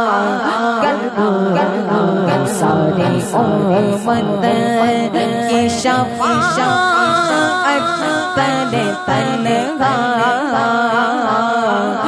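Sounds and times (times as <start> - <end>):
man singing slow melody: 3.5 - 10.8.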